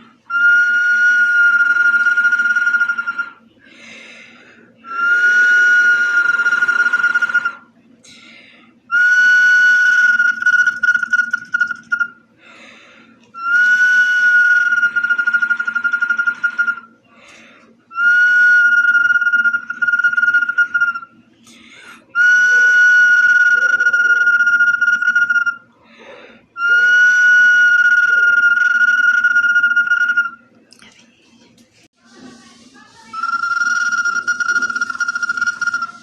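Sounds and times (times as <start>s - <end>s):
whistling bottle being blown: 0.0s - 3.5s, 4.8s - 7.7s, 8.9s - 12.3s, 13.3s - 17.0s, 17.9s - 21.2s, 21.9s - 25.8s, 26.6s - 30.5s, 33.0s - 36.0s.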